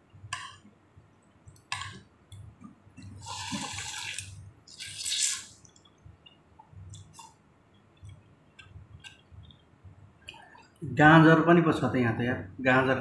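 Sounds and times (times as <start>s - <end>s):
slurping noodle soup: 3.1s - 5.8s.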